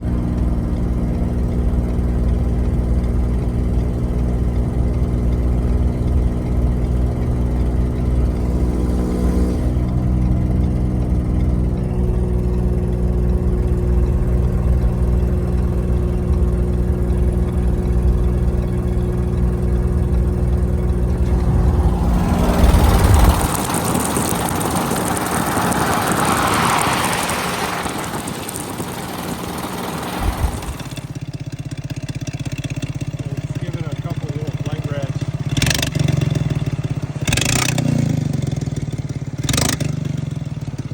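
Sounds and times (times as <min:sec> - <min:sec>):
engine idling with exhaust leak: 0:00.0 - 0:40.9
loud rushing hiss: 0:21.0 - 0:31.1.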